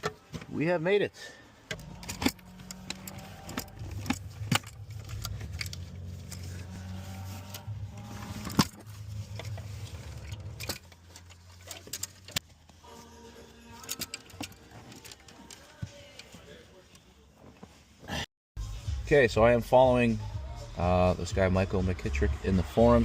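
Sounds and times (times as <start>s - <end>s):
low steady hum: 1.4s - 15.7s
metallic clicks of tools: 1.7s - 6.4s.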